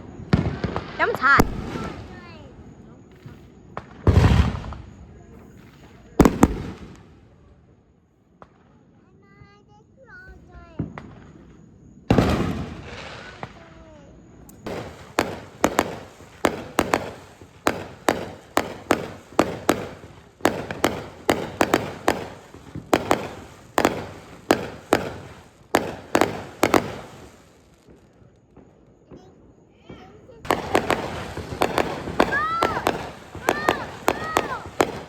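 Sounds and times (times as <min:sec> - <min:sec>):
firework boom: 0:00.0 - 0:02.5, 0:03.2 - 0:07.1
sharp firework bangs: 0:00.0 - 0:07.4, 0:10.6 - 0:35.0.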